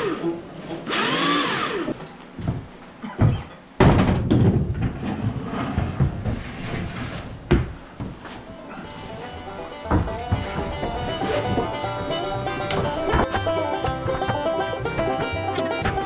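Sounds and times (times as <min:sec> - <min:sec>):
electric winch motor whining: 0:00.0 - 0:02.0
heavy machine rumbling and clattering: 0:02.5 - 0:16.0.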